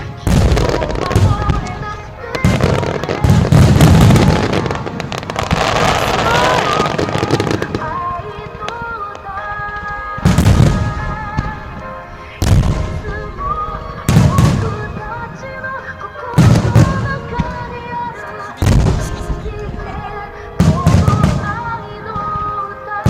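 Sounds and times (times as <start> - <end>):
pop song with singing: 0.0 - 23.0
firework shells booming: 2.4 - 9.0.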